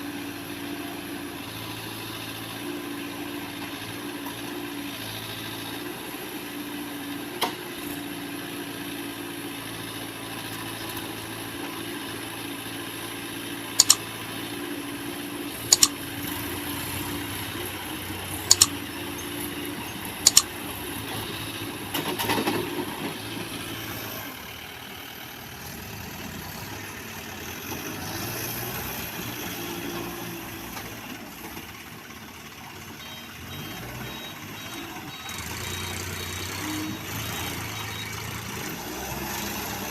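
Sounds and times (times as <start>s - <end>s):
diesel engine running: 7.9s - 39.9s
sharp double clicks: 13.8s - 14.1s, 15.7s - 16.0s, 18.5s - 18.8s, 20.2s - 20.5s.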